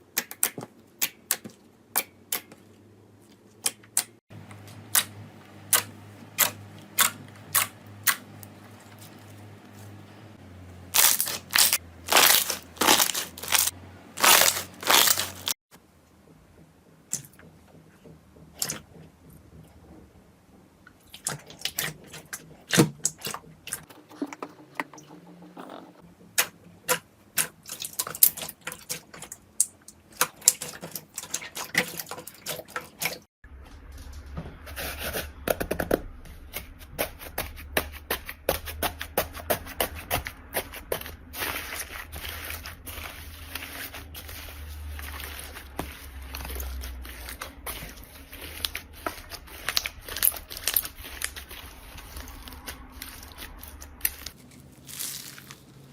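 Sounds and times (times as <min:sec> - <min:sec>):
low steady hum: 0:04.4 - 0:27.4.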